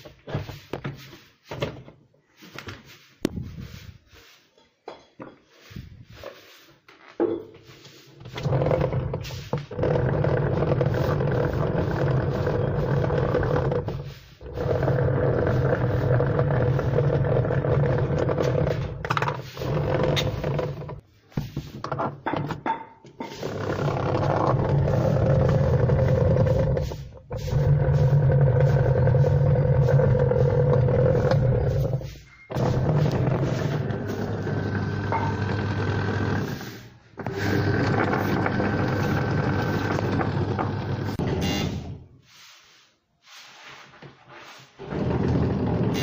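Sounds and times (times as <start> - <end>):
washing machine motor humming: 14.4 - 19.0, 23.4 - 26.8, 27.6 - 36.6, 37.2 - 41.9, 44.8 - 46.0.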